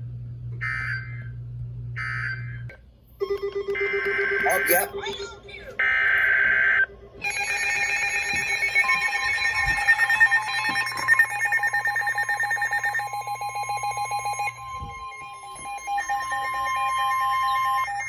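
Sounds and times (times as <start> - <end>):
pulsing electronic alarm: 0.6 - 1.4, 2.0 - 5.2, 5.8 - 18.0
steady attention tone: 3.2 - 18.0
data header burst: 4.2 - 5.1.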